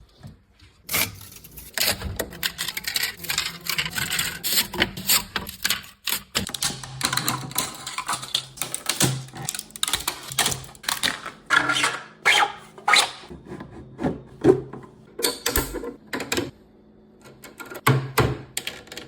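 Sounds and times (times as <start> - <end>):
mechanical clicking and clatter: 1.7 - 11.4.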